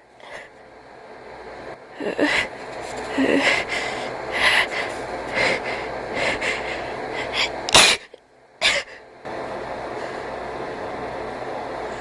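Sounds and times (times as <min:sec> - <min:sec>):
steady background hum: 0:00.0 - 0:12.0
wheezing breaths: 0:02.0 - 0:07.7
person sneezing: 0:07.2 - 0:09.0.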